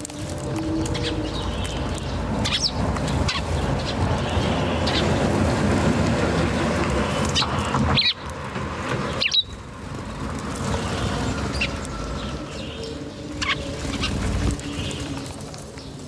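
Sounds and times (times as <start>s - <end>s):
birds chirping: 0.0s - 16.0s.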